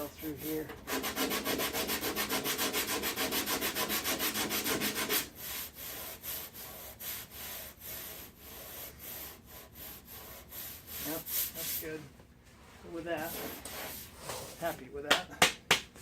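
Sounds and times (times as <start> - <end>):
sandpaper rubbing on filler: 0.0 - 12.0, 12.8 - 14.8.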